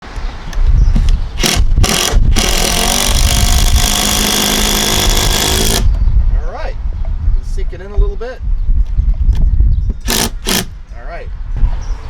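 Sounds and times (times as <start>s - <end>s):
wind buffeting microphone: 0.0s - 12.0s
impact drill driving a screw: 1.4s - 5.9s, 10.0s - 10.7s.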